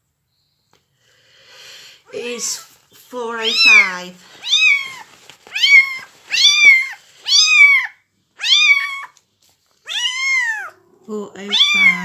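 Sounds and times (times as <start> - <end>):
kitten mewing: 3.5 - 9.2, 9.8 - 12.0.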